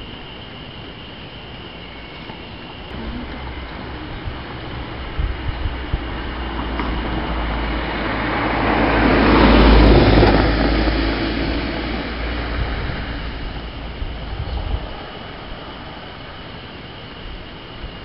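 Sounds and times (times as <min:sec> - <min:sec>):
steady low rumble: 0:00.0 - 0:18.0
vehicle driving past: 0:02.9 - 0:16.5.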